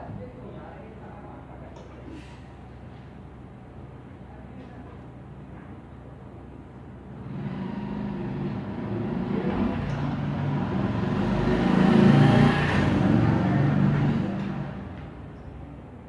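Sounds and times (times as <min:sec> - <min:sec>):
motor vehicle passing by: 0:07.2 - 0:15.4.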